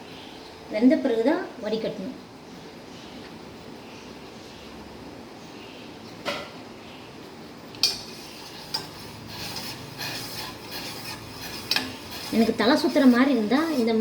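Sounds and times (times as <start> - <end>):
spoon scraping pot while stirring: 7.8 - 14.0.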